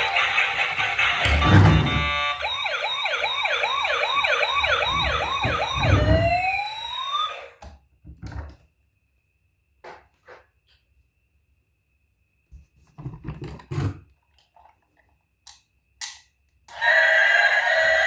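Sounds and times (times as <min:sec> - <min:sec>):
music: 0:00.0 - 0:05.6
toy siren warbling: 0:00.0 - 0:07.6, 0:16.7 - 0:18.0.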